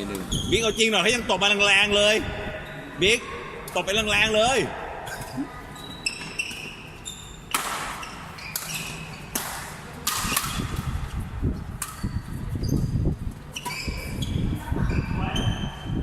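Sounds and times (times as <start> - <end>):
sharp racket hits: 7.5 - 10.9.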